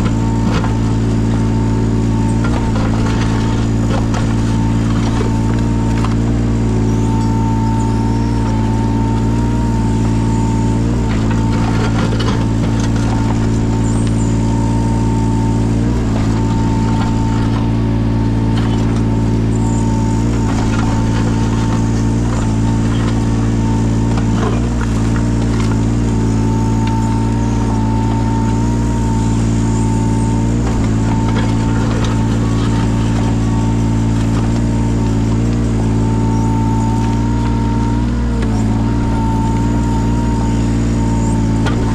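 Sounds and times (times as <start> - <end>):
diesel engine with high whine: 0.0 - 41.9
clatter: 2.2 - 6.4, 10.4 - 14.6, 15.4 - 27.6, 30.3 - 37.6.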